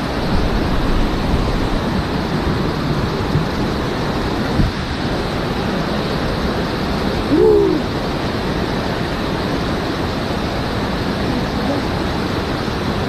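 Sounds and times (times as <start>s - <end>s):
falling water rushing: 0.0s - 13.0s
hoot-like call: 7.2s - 8.0s.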